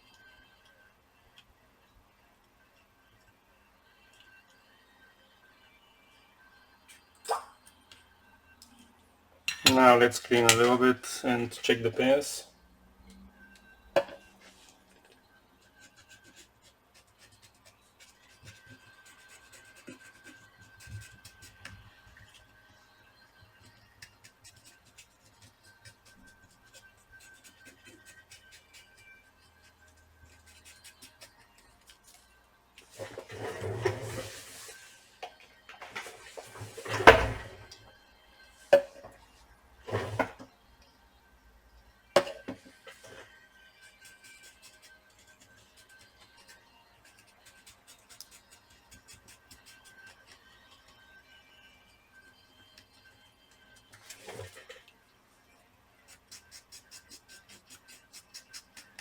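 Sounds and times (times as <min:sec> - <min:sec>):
scratchy rubbing on circuit board: 0:15.7 - 0:21.6, 0:56.1 - 0:59.0.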